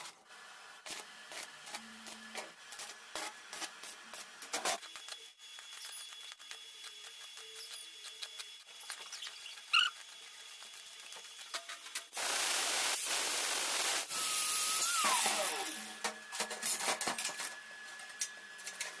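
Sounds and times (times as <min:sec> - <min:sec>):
power tool hissing: 0:12.1 - 0:16.0
motor winding down whine: 0:14.0 - 0:16.1.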